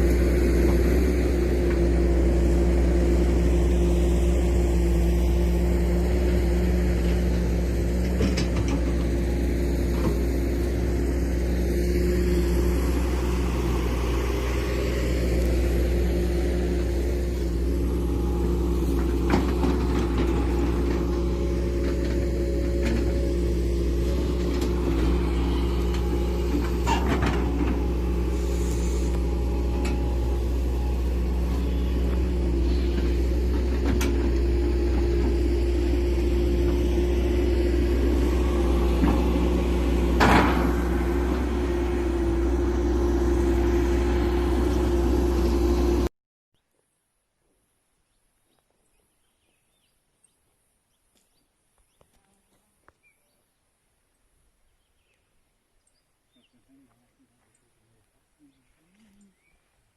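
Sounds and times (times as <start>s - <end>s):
excavator diesel engine running: 0.0s - 46.1s.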